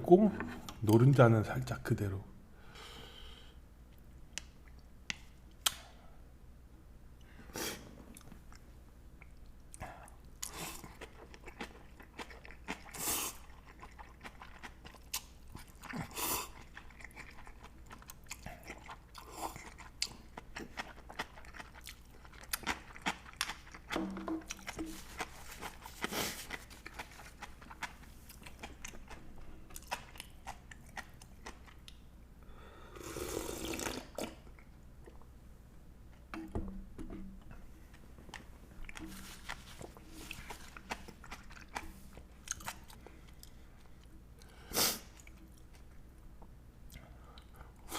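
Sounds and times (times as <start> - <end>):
chewing and crunching food: 8.1 - 32.0, 37.5 - 47.9.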